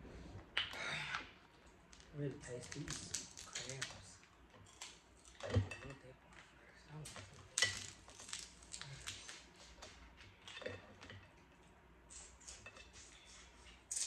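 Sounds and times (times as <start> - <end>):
crab shell cracking: 1.9 - 5.4.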